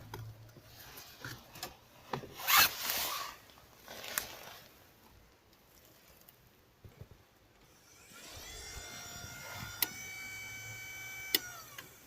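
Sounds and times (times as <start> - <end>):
blower fan motor whining: 7.7 - 12.0.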